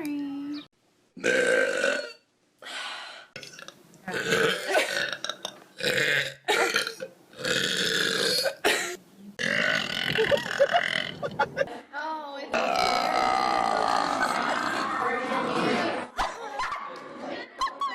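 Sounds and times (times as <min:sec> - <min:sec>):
loud drawn-out burps: 0:01.2 - 0:02.3, 0:03.4 - 0:11.6, 0:12.5 - 0:15.8.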